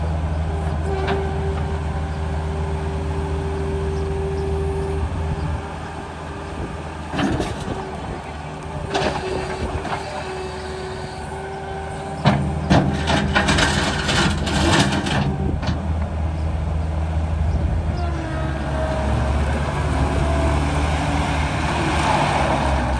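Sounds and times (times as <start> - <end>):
diesel engine running: 0.0 - 16.1, 17.8 - 22.9.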